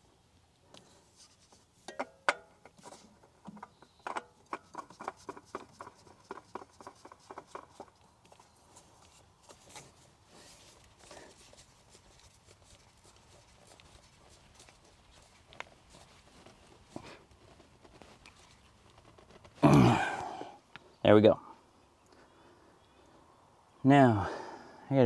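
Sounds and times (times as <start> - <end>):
oil filter clicking and tapping: 1.8 - 8.4.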